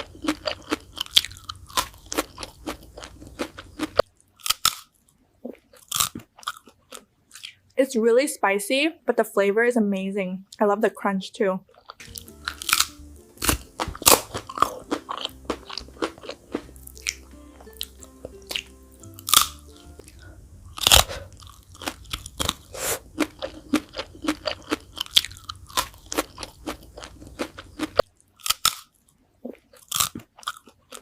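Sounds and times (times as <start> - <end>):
crunchy chewing: 0.0 - 7.6, 11.7 - 31.0
soft background music: 12.0 - 22.0.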